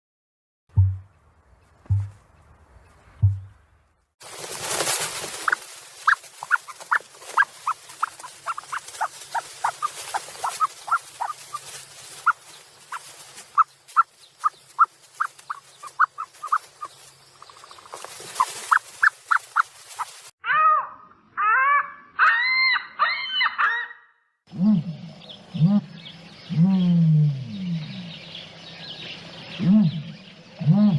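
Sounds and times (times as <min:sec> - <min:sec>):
ostriches chirping peeps: 0:05.3 - 0:20.3
ostriches drawn-out calls: 0:05.4 - 0:17.0.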